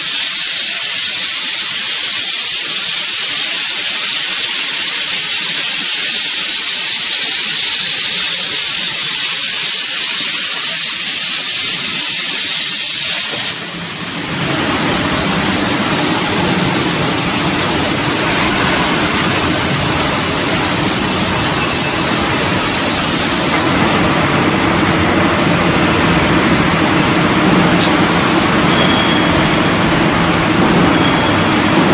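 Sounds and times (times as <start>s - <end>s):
plasma torch hissing cutting metal: 0.0s - 23.9s.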